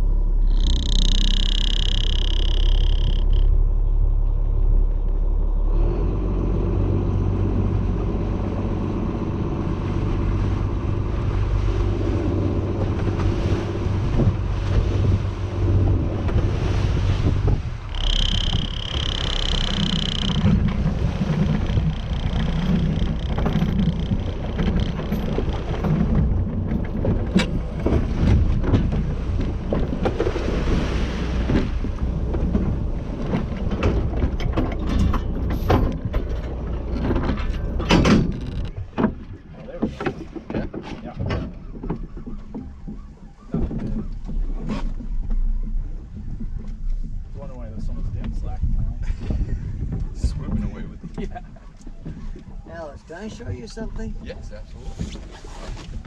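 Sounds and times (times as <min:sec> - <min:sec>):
wind on microphone: 0:00.0 - 0:03.5, 0:07.2 - 0:52.7, 0:53.4 - 0:56.0
boat engine rumble: 0:00.0 - 0:56.0
brief high-pitched tone: 0:00.5 - 0:03.6.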